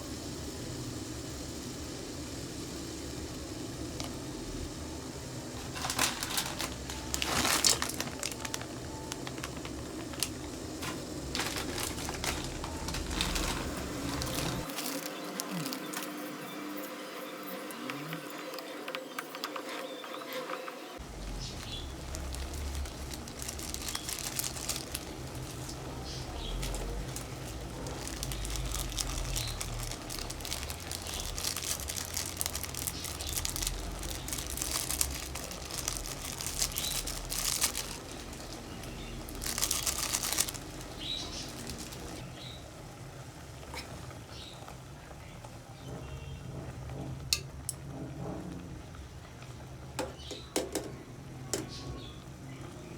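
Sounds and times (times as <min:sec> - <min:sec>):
rustling of things being handled: 0:05.5 - 0:42.3.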